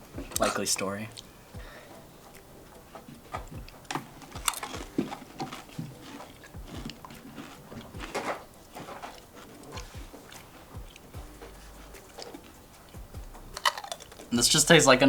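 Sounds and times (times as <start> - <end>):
chewing: 0.2 - 14.4
potato crisps crunching: 3.6 - 10.5, 13.6 - 14.4.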